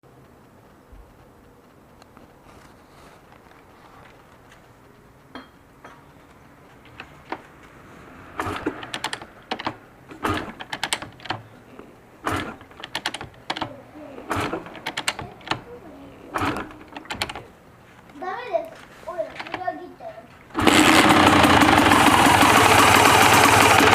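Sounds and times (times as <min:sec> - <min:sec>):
engine metallic clicking and rattling: 0:08.3 - 0:17.5, 0:20.5 - 0:23.9.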